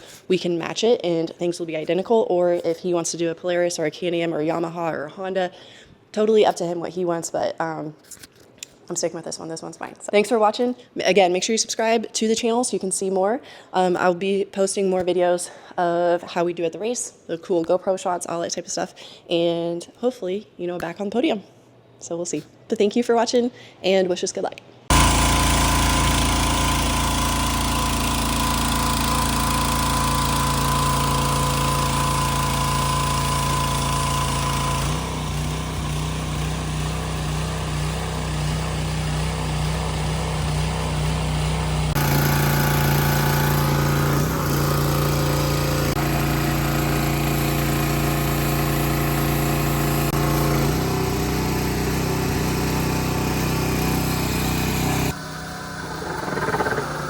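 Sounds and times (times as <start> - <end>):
engine running: 24.9 - 57.0.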